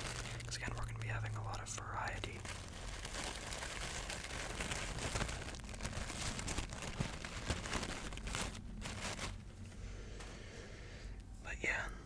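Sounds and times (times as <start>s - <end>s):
crinkly material crumpling: 0.0s - 10.5s.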